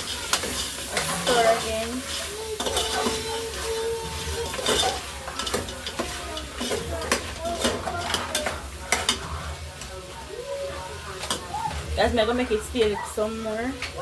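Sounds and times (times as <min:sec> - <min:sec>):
spoon scraping a pot: 0:00.0 - 0:09.6
meat sizzling in hot oil: 0:00.0 - 0:14.0.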